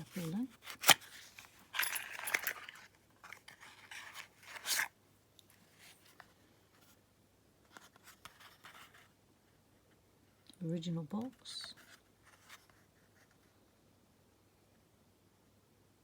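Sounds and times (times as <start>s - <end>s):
padlocks scraping and rubbing: 0.7s - 4.9s.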